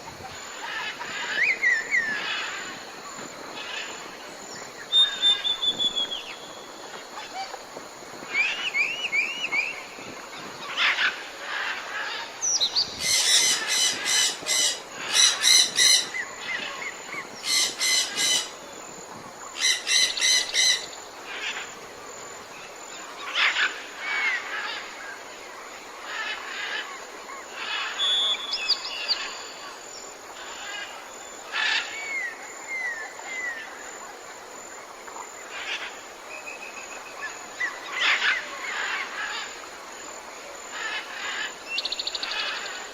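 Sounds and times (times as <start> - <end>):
birds chirping: 0.1 - 18.8
bird whistles: 4.9 - 6.4.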